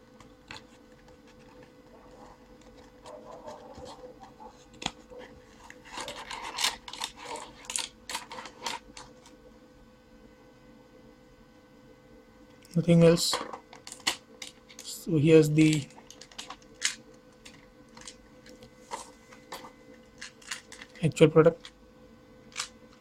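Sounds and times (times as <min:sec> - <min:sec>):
contents rustling against cardboard: 0:00.5 - 0:09.1.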